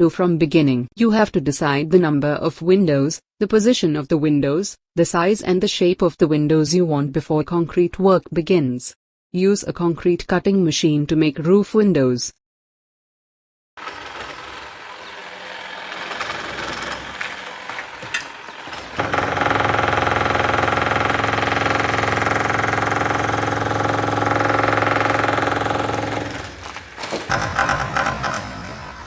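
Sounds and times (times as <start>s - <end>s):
concrete cutting saw running: 13.8s - 26.7s
mechanical rattling and knocks: 15.9s - 28.9s.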